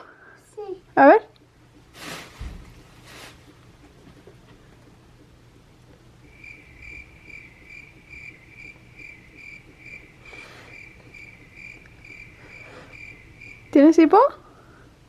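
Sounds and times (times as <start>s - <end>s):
soft breathy sound: 6.3s - 13.7s.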